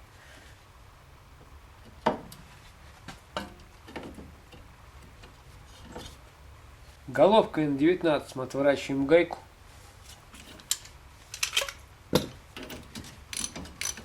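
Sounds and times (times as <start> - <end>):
hand tools clicking on metal: 10.4 - 11.8, 12.6 - 14.0.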